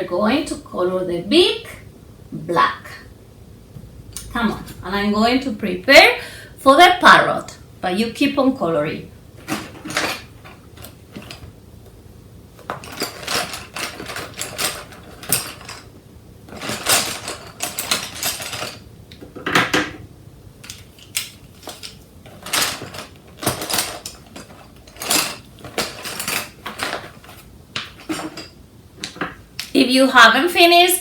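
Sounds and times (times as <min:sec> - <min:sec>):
rustling and clattering objects: 0:09.2 - 0:29.8.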